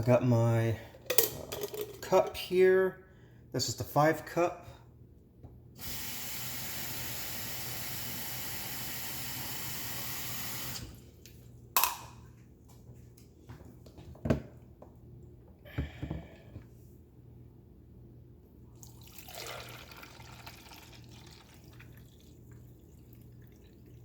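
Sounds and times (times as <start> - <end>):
tap running into carafe: 11.8 - 12.1.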